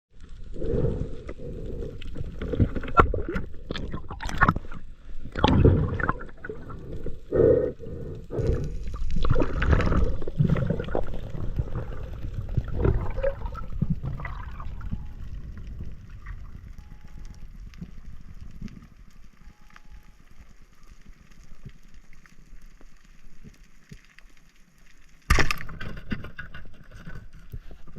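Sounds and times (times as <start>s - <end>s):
underwater gurgling and bubbling: 0.3s - 19.4s.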